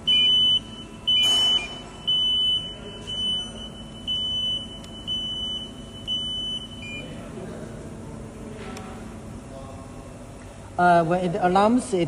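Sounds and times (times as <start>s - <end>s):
alarm beeping: 0.0s - 7.2s.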